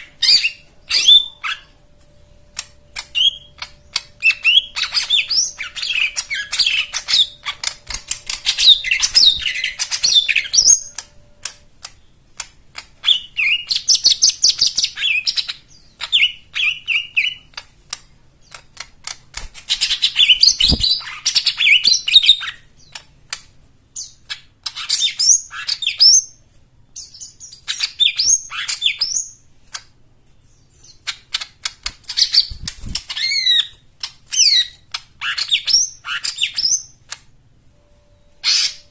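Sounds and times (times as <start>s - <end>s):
bird singing chirps and trills: 0.0s - 12.2s, 13.0s - 17.6s, 30.4s - 37.2s, 38.2s - 38.9s.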